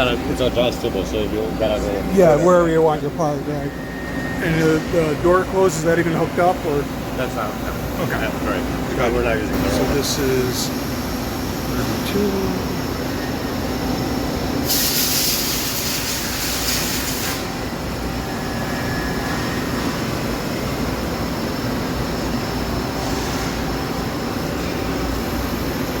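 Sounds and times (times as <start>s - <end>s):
machine hum: 0.0s - 26.0s
loud hiss: 14.6s - 17.5s.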